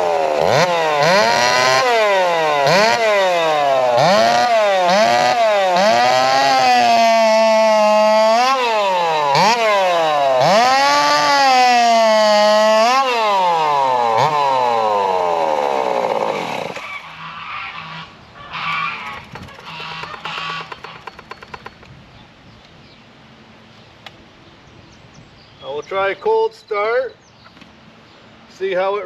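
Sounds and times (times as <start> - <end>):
chainsaw revving: 0.0 - 21.9
faint clatter: 19.0 - 22.0.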